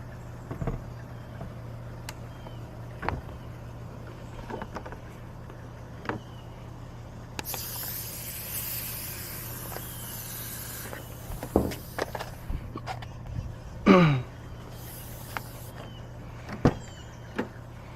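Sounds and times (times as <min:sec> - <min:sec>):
low steady hum: 0:00.0 - 0:17.9
steady hiss: 0:07.4 - 0:12.6, 0:14.7 - 0:15.8.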